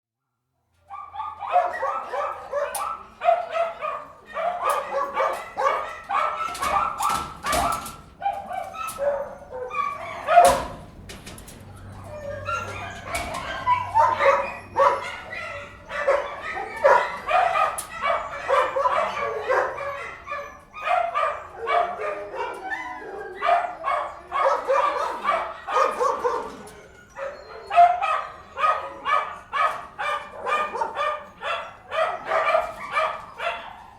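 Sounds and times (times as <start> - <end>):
dogs barking and yipping: 0.8 - 33.9
dogs whimpering: 0.9 - 10.7, 11.8 - 33.9.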